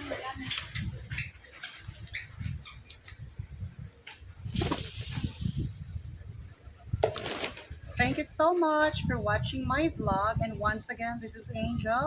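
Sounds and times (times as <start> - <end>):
wings flapping: 4.0 - 5.6, 7.0 - 7.9.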